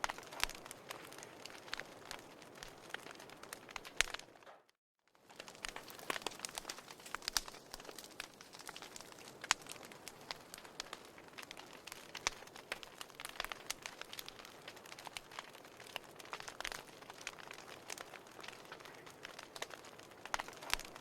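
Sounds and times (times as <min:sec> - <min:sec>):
wood fire pops and snaps: 0:00.0 - 0:21.0
soft fire hiss: 0:05.2 - 0:21.0.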